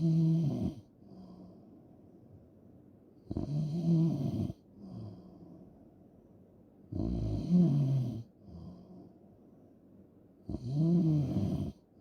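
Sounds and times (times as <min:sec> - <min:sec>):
quiet breath: 0:00.8 - 0:02.2, 0:04.5 - 0:06.2, 0:08.2 - 0:09.7.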